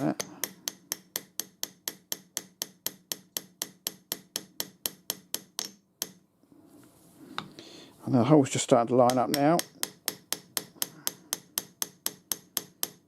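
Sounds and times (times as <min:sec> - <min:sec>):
rapid light hammer taps: 0:09.0 - 0:13.0.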